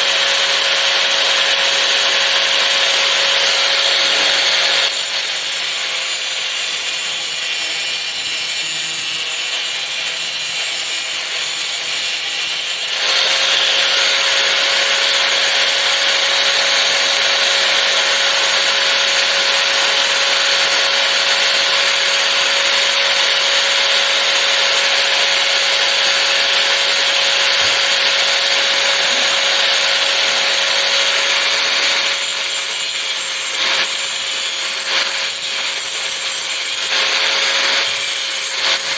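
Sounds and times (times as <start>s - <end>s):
small power tool whining: 0.0s - 38.9s
grinding hiss: 4.0s - 13.4s, 28.6s - 38.9s.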